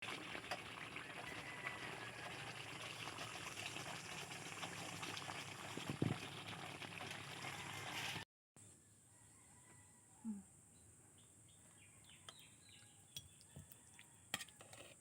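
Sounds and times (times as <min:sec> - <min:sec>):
liquid simmering in a pot: 0:00.0 - 0:08.2.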